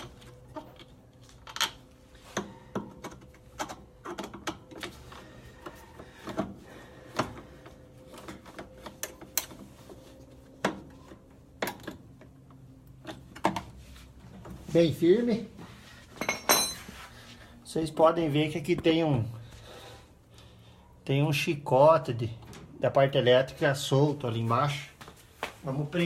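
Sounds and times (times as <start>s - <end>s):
tools clicking and knocking: 0.0s - 5.0s.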